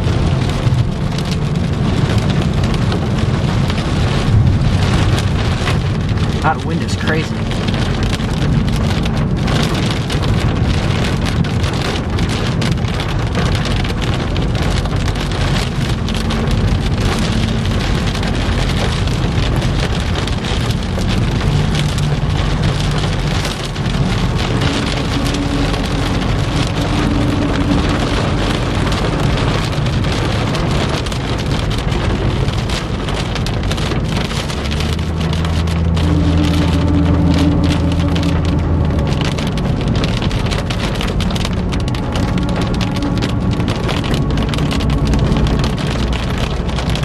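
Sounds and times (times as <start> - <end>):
heavy rain pelting a car: 0.0 - 47.0
low vehicle hum: 0.0 - 47.0.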